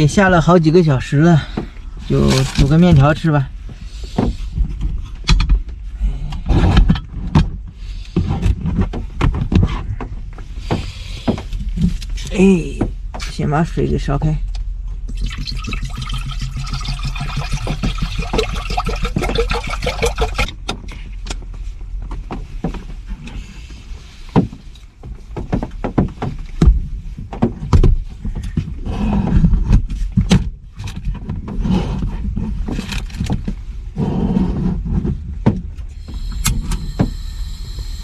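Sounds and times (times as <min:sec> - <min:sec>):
water pouring into a pot: 0:15.2 - 0:20.5.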